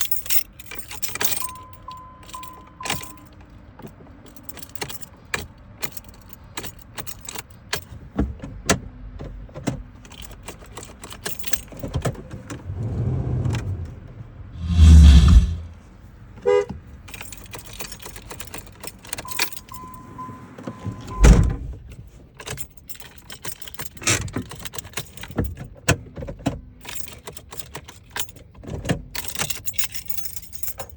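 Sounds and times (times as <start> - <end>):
car keys jangling: 0.0 - 3.5, 4.2 - 7.9, 10.0 - 13.0, 17.1 - 20.0, 22.0 - 25.6, 26.8 - 30.9.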